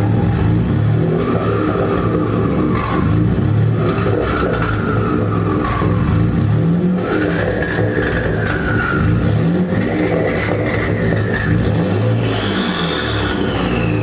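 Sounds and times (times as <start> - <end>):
truck engine revving: 0.0 - 14.0
turbo whistle: 7.2 - 14.0.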